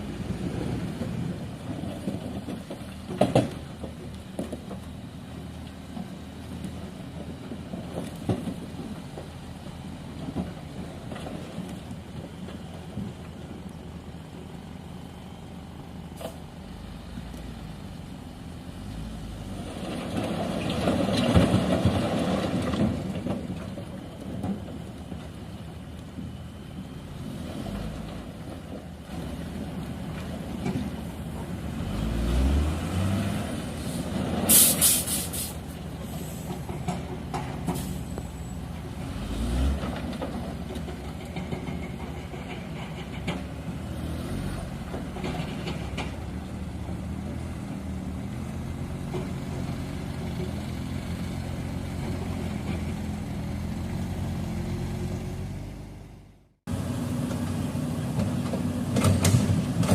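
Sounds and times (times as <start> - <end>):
diesel truck engines running: 0.0 - 59.9
air hiss: 33.8 - 36.5.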